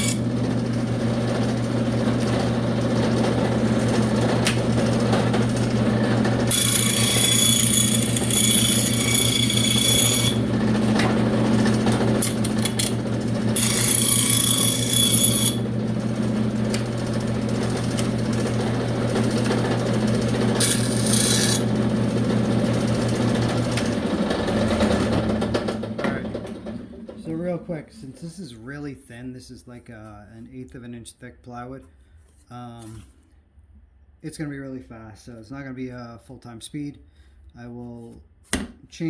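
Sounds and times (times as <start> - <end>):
saw blade cutting plywood: 0.0 - 25.5
bandsaw motor hum: 0.0 - 27.6.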